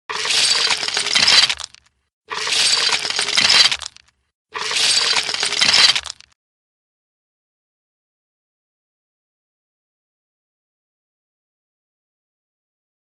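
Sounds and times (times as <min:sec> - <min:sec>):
ice cubes poured into a bucket: 0:00.2 - 0:04.0, 0:04.6 - 0:06.3.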